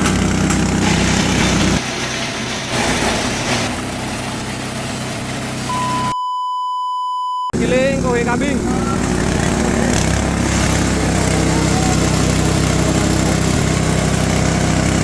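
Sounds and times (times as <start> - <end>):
grinder machine running: 0.0 - 6.1, 7.6 - 15.0
steady electronic beep: 5.7 - 7.6.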